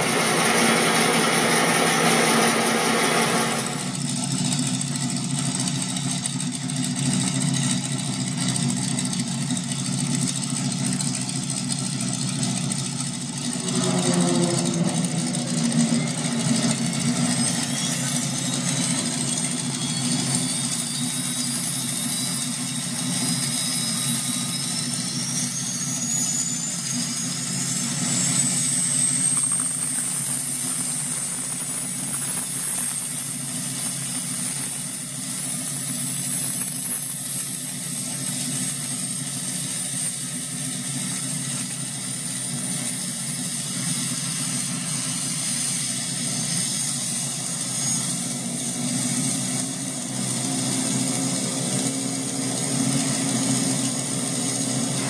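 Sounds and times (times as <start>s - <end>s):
low rumble: 13.0s - 20.7s
toy jet engine sound effect: 13.4s - 40.1s.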